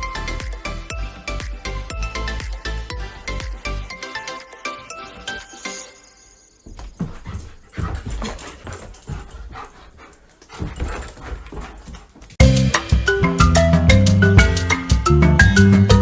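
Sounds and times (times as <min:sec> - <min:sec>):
loud music: 0:12.4 - 0:16.0.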